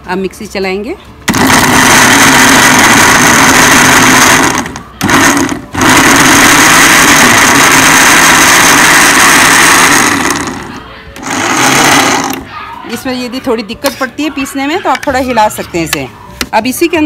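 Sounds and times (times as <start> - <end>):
mixer grinder running: 1.3 - 12.5.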